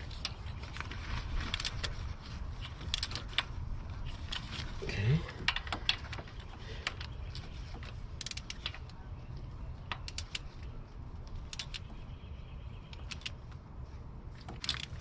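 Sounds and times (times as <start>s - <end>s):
tools clicking on metal: 6.8s - 9.0s, 9.9s - 10.5s, 11.4s - 12.0s, 12.9s - 13.5s, 14.4s - 15.0s
ratchet wrench clicking: 8.2s - 8.7s, 11.4s - 11.8s.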